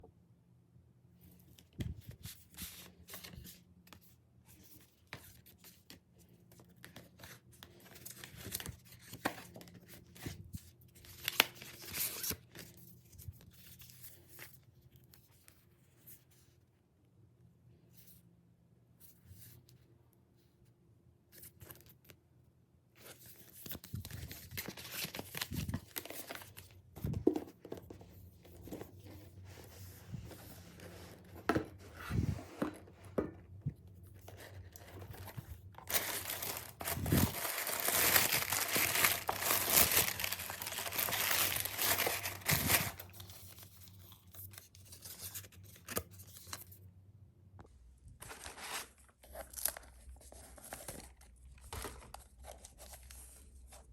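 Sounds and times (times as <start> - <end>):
paper packaging tearing: 35.8 - 43.1.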